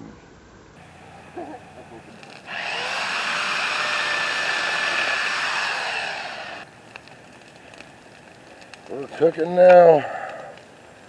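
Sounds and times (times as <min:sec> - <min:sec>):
chainsaw cutting a tree: 0:00.8 - 0:09.0.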